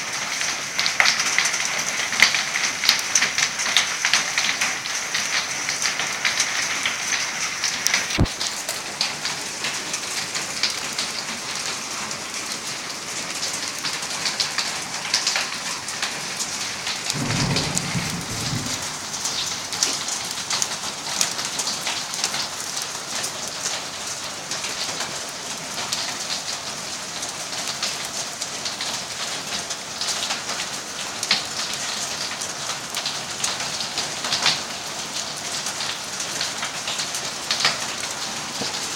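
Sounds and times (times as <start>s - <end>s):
rain and hail pattering: 0.0s - 38.9s
low rumble: 17.2s - 19.1s.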